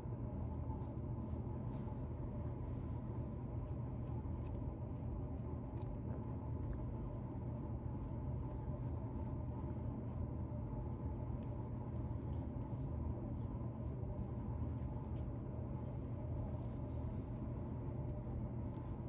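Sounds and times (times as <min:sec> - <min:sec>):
steady low hum: 0:00.0 - 0:19.0
beard scratching: 0:16.4 - 0:19.0.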